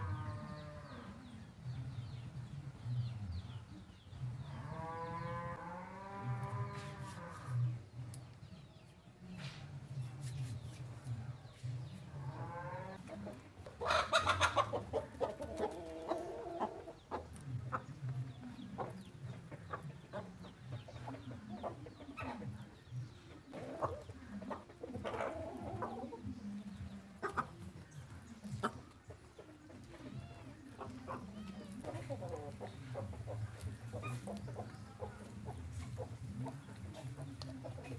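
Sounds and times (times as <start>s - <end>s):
chickens clucking: 0.0s - 37.9s.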